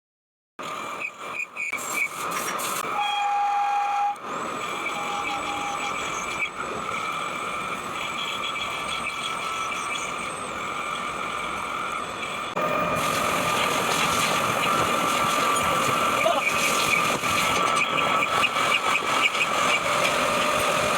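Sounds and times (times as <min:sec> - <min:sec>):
metal lathe whining: 0:01.8 - 0:20.9
brief clear tone: 0:04.8 - 0:06.0.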